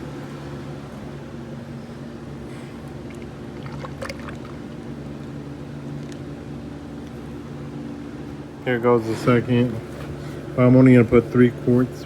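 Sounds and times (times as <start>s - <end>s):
electric fan humming: 0.0s - 12.0s.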